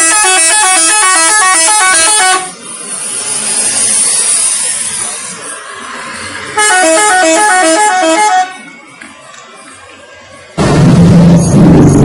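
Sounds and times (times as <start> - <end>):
multi-tone bus horn melody: 0.0 - 2.6, 6.5 - 8.7
loud even noise: 10.6 - 12.0.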